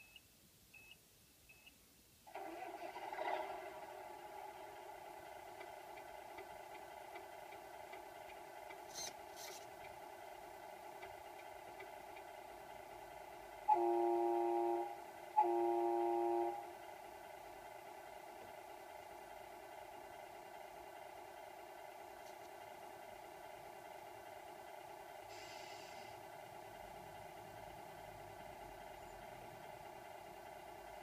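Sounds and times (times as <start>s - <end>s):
diesel engine idling hum: 2.5s - 31.0s
truck air horn blasts: 13.7s - 16.7s.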